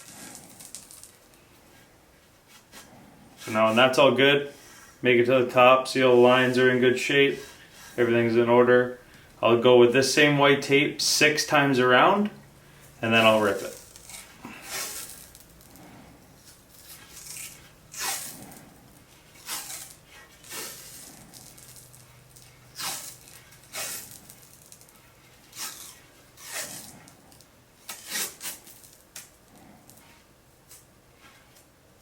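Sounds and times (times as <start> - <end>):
tape peeling off a roll: 0.0 - 3.9, 13.2 - 31.8.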